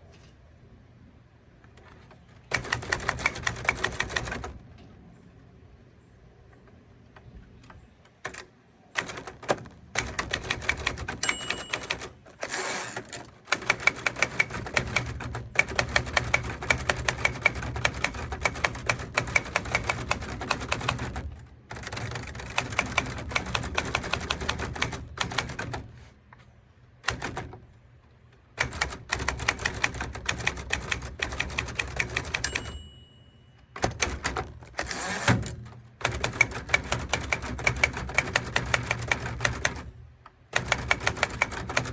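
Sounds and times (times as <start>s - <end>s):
typewriter carriage return: 1.8s - 4.6s, 8.2s - 26.0s, 27.0s - 27.6s, 28.6s - 40.0s, 40.6s - 41.9s
typewriter keystrokes: 2.5s - 4.6s, 8.1s - 26.0s, 27.0s - 27.6s, 28.6s - 33.0s, 33.7s - 39.9s, 40.6s - 41.9s
typewriter end-of-line bell: 11.1s - 13.0s, 32.1s - 34.2s.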